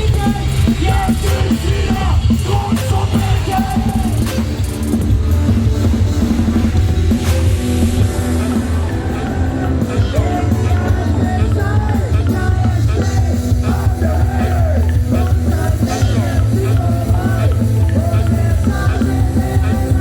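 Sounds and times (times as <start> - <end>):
person shout-singing: 0.0 - 4.6, 8.4 - 20.0
punk rock music: 0.0 - 20.0.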